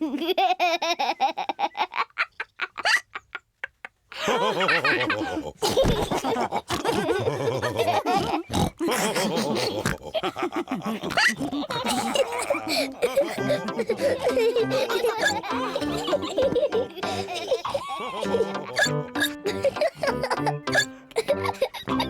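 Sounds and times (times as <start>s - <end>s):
voices laughing: 4.1s - 22.0s
cartoon pigs snorting: 4.5s - 22.0s.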